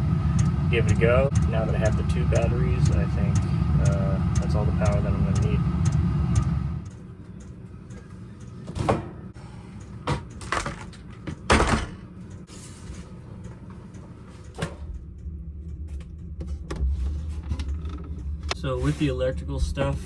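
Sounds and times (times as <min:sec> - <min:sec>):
low steady hum: 0:00.0 - 0:20.0
knocks and bumps: 0:10.0 - 0:12.1.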